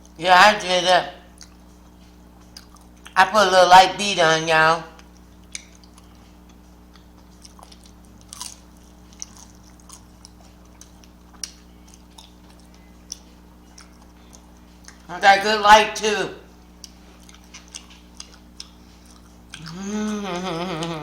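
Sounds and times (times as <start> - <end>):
low hum: 0.0 - 21.0
person chewing and crunching food: 1.3 - 3.2, 4.9 - 15.1, 16.5 - 21.0.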